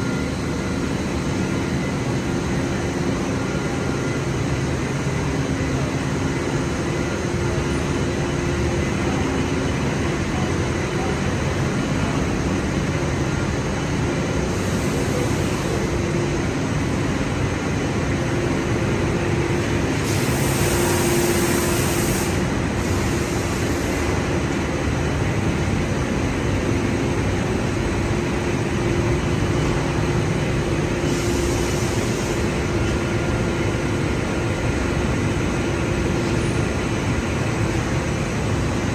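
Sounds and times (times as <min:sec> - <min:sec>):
industrial machinery hum: 0:00.0 - 0:38.9.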